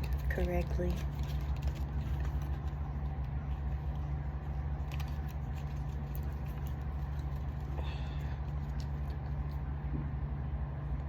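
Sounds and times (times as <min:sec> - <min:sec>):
cards rustling and clicking: 0:00.0 - 0:07.8
steady low rumble: 0:00.0 - 0:11.0.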